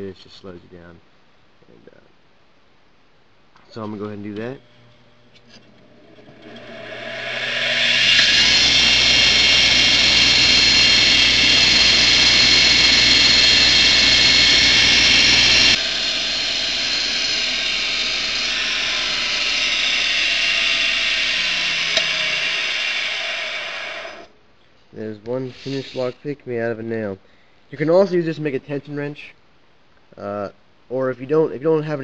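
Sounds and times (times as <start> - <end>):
bench grinder whine: 4.4 - 24.3.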